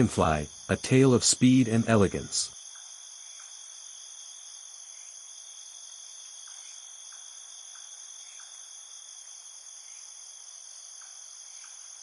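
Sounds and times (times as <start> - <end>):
crickets trilling: 0.0 - 12.0
faint short insect chirps: 2.5 - 12.0.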